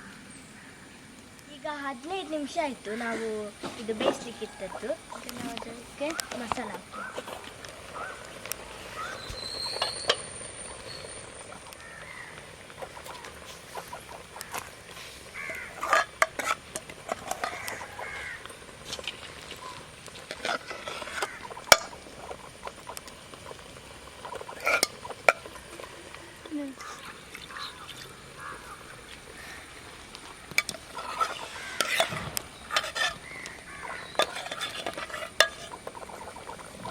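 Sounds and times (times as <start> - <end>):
short chirping calls: 4.2 - 14.5.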